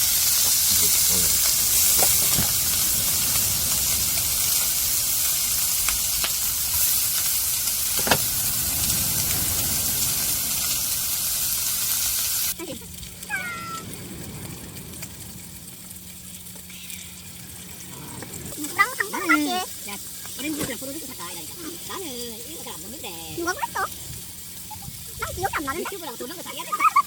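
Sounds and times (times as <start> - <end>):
low steady hum: 0.0 - 26.2
meat sizzling on a grill: 0.0 - 27.0
gliding animal cry: 13.2 - 15.5.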